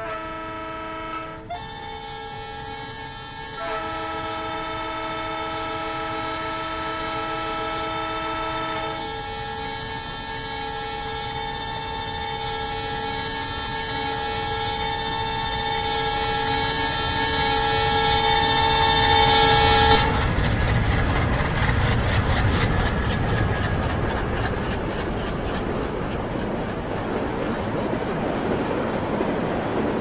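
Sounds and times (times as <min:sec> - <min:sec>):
train horn chord: 0:00.0 - 0:20.5
train wheels clickety-clack: 0:01.5 - 0:30.0.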